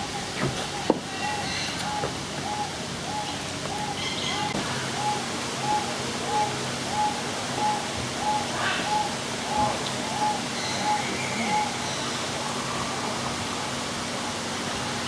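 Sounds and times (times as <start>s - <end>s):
bird calling a rising-falling note: 0.7s - 12.0s.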